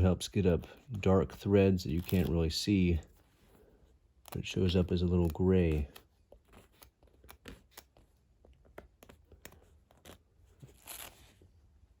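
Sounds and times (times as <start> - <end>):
knife blade clicking and scratching: 1.9 - 2.4.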